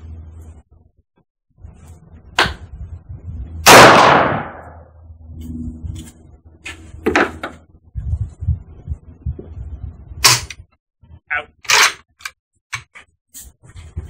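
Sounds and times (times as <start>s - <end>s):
wind rumble on microphone: 1.6s - 11.3s, 13.4s - 14.0s.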